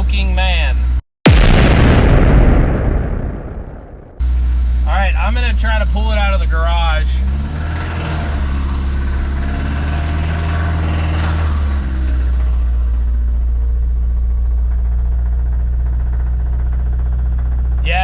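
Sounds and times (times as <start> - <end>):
pickup engine idling: 4.2 - 9.7, 10.4 - 18.0.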